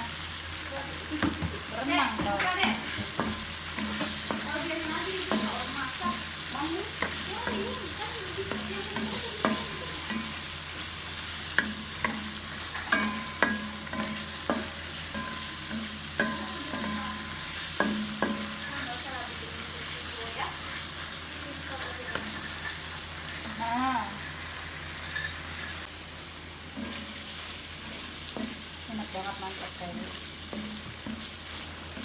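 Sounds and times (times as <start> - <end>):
food sizzling in a frying pan: 0.0 - 32.0
spatula knocking and scraping pan: 1.2 - 25.9, 26.7 - 32.0.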